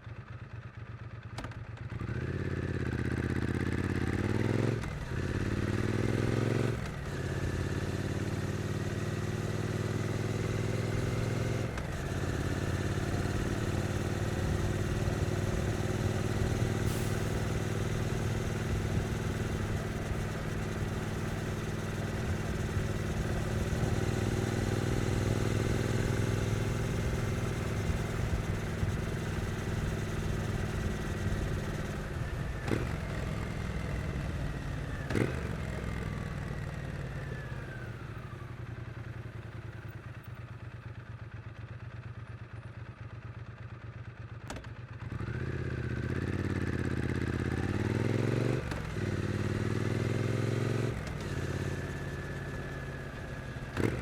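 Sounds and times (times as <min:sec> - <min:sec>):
motorcycle engine running: 0:00.0 - 0:54.0.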